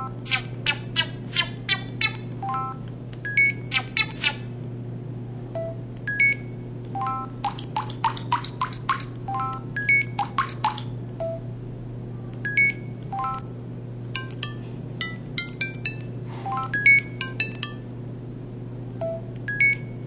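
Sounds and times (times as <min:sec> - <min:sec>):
low electrical hum: 0:00.0 - 0:20.0
phone key beeps: 0:12.5 - 0:13.5, 0:19.0 - 0:19.9.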